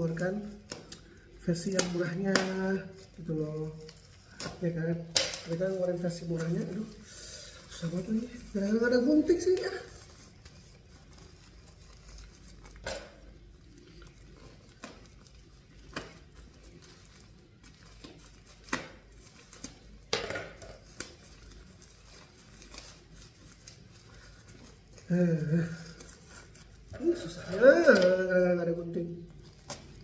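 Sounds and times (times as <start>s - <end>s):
faint packaging rustling: 0.0s - 30.0s.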